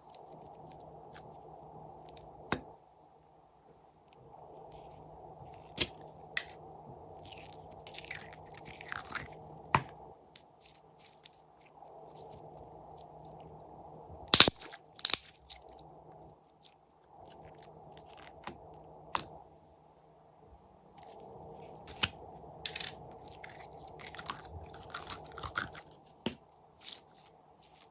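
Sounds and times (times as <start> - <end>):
slime crackling and popping: 14.3 - 15.4.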